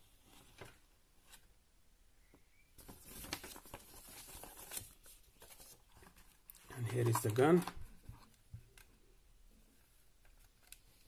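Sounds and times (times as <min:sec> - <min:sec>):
packaging rustling and crinkling: 0:02.8 - 0:07.8.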